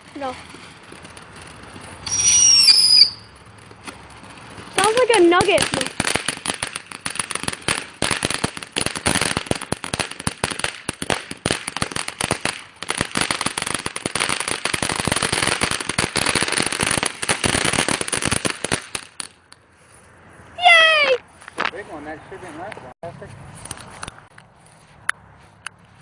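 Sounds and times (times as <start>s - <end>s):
crackling firework popping: 0.0s - 19.7s.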